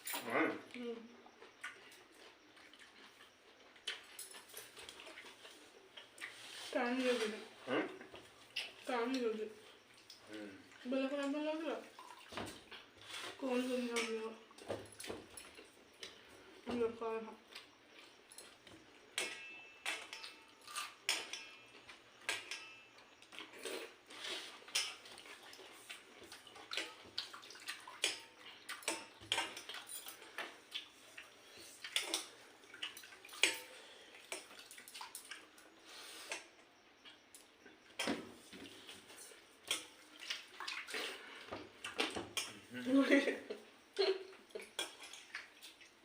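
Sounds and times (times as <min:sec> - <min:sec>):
hands mixing wet rice: 0:01.7 - 0:10.3, 0:44.5 - 0:46.0
dishes and cutlery clinking: 0:18.3 - 0:23.6, 0:31.8 - 0:34.5
wet splashing: 0:24.8 - 0:35.5, 0:39.7 - 0:42.1, 0:44.6 - 0:46.0.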